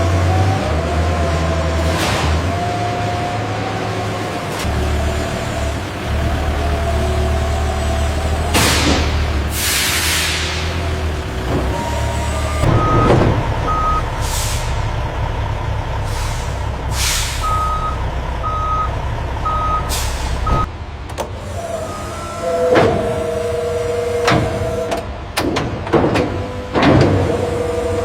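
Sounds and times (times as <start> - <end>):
truck engine running: 0.0 - 28.0
air brakes hissing: 8.6 - 11.1, 13.6 - 15.0, 16.0 - 18.0, 19.7 - 20.7
backup alarm beeping: 11.7 - 14.3, 17.4 - 20.7.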